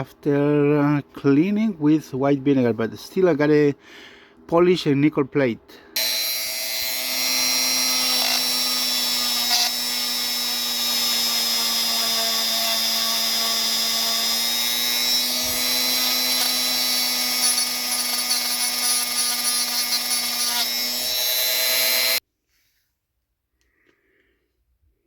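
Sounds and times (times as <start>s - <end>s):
rotary tool whining: 6.0s - 22.2s.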